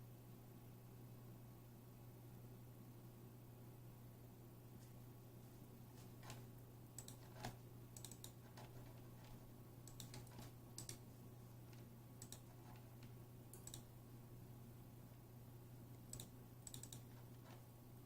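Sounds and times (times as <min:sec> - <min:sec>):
steady low hum: 0:00.0 - 0:18.0
keyboard keys pressed: 0:07.0 - 0:11.0, 0:11.7 - 0:13.9, 0:16.1 - 0:17.6.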